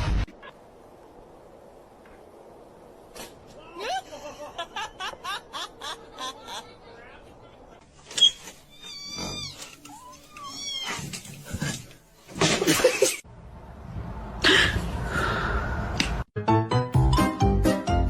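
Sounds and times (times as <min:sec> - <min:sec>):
cat meowing and yowling: 0:08.7 - 0:11.1.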